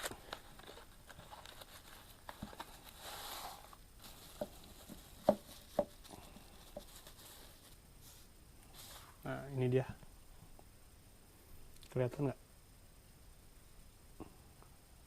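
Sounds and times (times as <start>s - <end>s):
packaging crinkling rustle: 0.0s - 9.2s.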